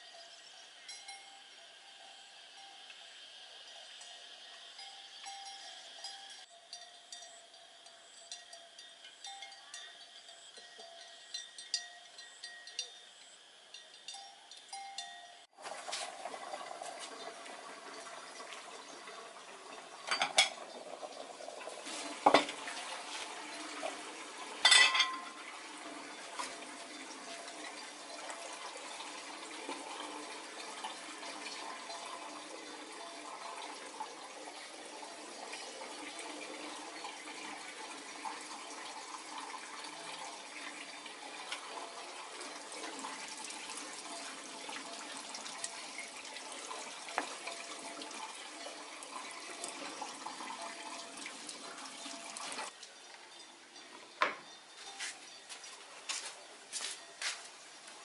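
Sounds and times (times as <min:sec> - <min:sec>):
running water: 0:00.0 - 0:58.0
dishes clinking: 0:19.9 - 0:20.7, 0:22.2 - 0:22.6, 0:24.6 - 0:25.6, 0:52.2 - 0:57.4.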